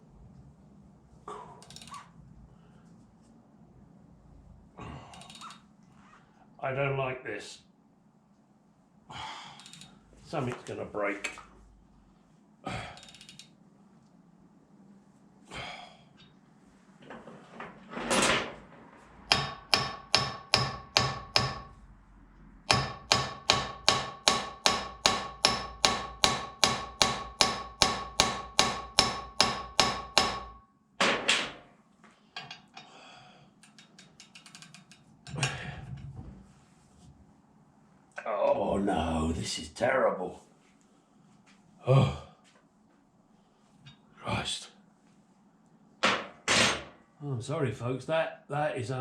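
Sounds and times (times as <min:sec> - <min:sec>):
hammer blows on ringing steel: 0:22.7 - 0:30.6.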